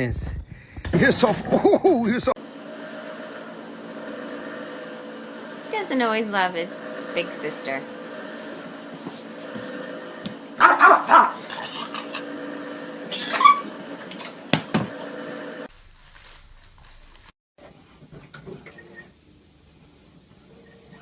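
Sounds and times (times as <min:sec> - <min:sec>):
steady hum: 0:00.5 - 0:17.3
dog barking and yipping: 0:10.6 - 0:12.2, 0:13.1 - 0:14.4.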